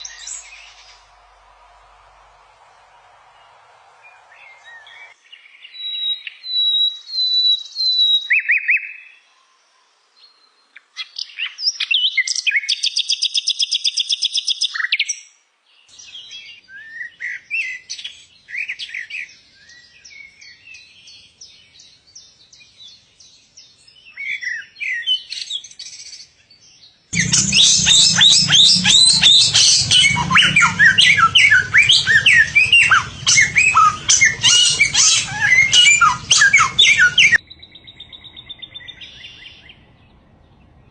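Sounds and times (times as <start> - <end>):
steady low hum: 0.0 - 5.1, 27.2 - 37.4
songbirds singing: 26.2 - 40.9
rapid bird chirping: 27.2 - 39.7.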